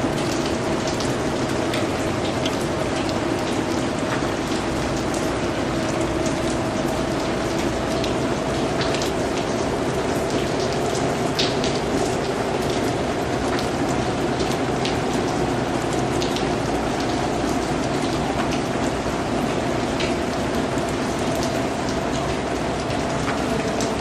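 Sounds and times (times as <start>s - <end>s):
raindrops ticking: 0.0s - 24.0s
steady rain: 0.0s - 24.0s.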